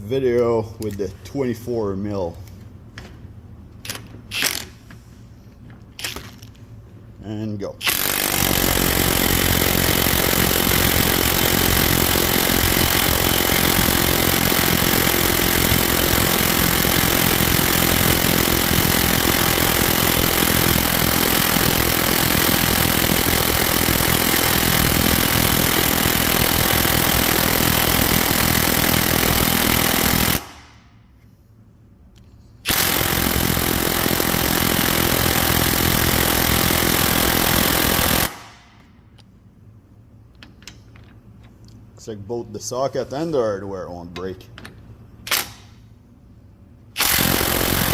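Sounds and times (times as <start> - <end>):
impact wrench hammering: 7.8 - 30.9, 32.7 - 39.0.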